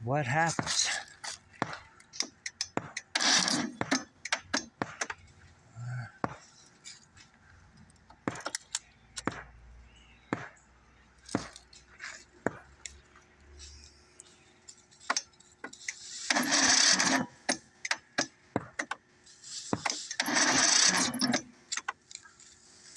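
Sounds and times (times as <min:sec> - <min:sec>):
sharp clicks: 0:00.6 - 0:05.2, 0:15.0 - 0:19.0.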